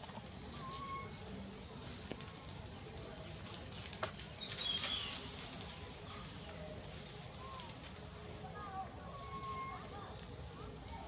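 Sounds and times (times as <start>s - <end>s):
high insect hiss: 0.0s - 11.0s
short whistled bird calls: 4.2s - 5.1s.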